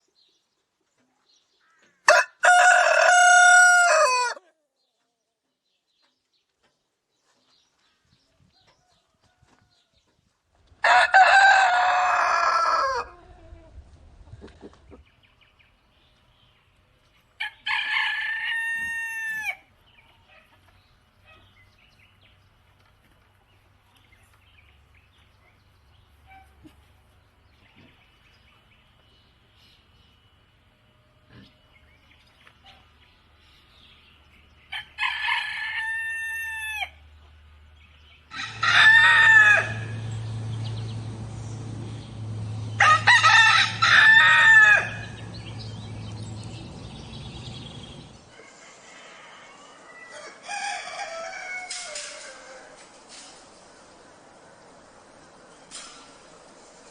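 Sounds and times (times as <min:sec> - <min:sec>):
rooster crowing: 0:02.1 - 0:04.4, 0:10.8 - 0:13.3, 0:17.4 - 0:19.6, 0:34.8 - 0:37.0, 0:38.3 - 0:40.5, 0:42.2 - 0:53.0.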